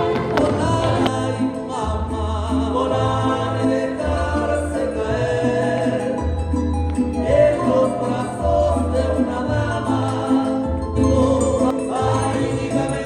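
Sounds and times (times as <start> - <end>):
moving bass line: 0.0 - 1.4
folk dance music with singing: 0.0 - 13.0.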